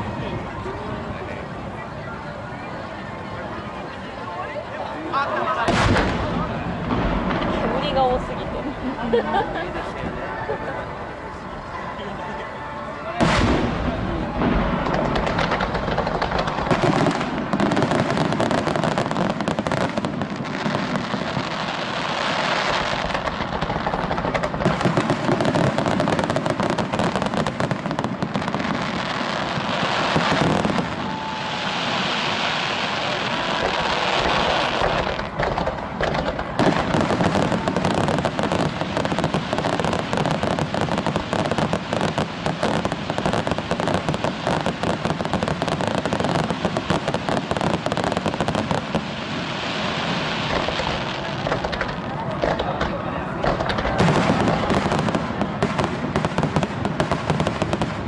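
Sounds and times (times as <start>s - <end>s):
hissing crackle: 13.3s - 58.0s.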